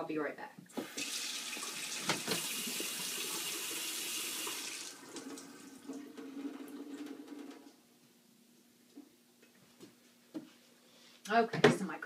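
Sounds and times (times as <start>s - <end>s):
faucet running: 0.7s - 7.4s.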